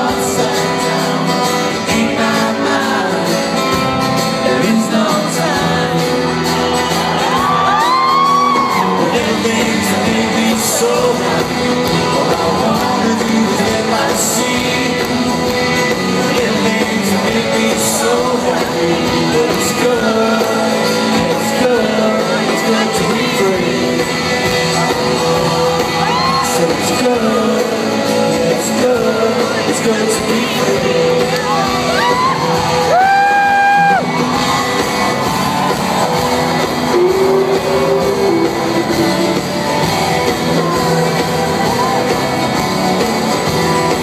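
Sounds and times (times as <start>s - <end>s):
live rock band playing: 0.0s - 44.0s
person singing: 0.0s - 44.0s
audience shouts and whoops: 5.8s - 13.6s, 24.2s - 26.9s, 31.0s - 44.0s.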